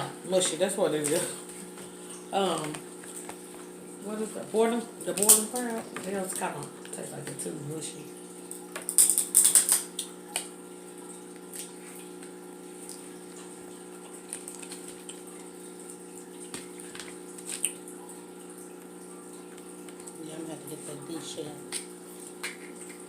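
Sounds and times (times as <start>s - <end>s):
shells crackling and smacking: 5.1s - 6.1s, 8.7s - 10.5s.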